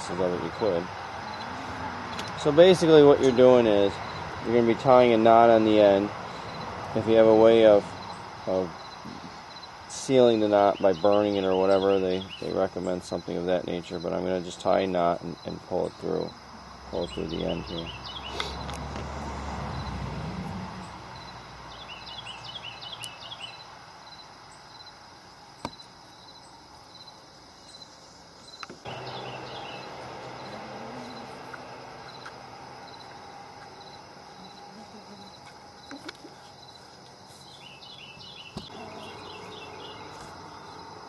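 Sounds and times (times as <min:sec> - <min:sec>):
insects chirping: 0:00.0 - 0:41.0.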